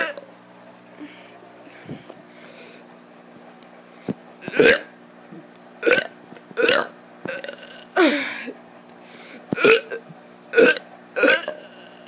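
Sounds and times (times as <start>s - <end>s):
child burping: 4.4s - 4.9s, 5.8s - 8.6s, 9.6s - 12.0s.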